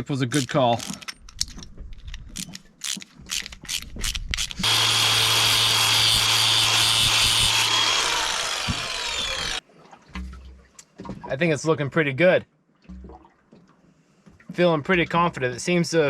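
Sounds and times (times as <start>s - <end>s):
power grinder grinding: 4.4s - 9.6s.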